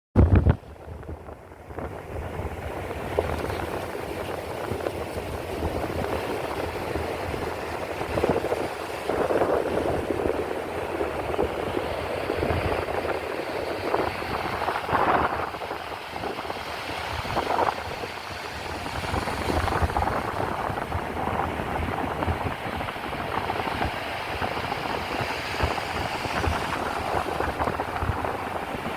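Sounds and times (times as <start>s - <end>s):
surf washing on beach: 0.2s - 28.9s
wind buffeting microphone: 0.2s - 28.9s.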